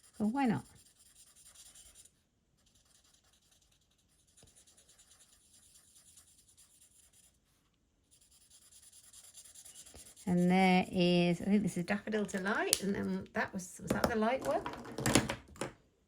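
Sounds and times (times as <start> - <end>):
marker scratching on card: 0.0 - 7.5, 8.1 - 10.7.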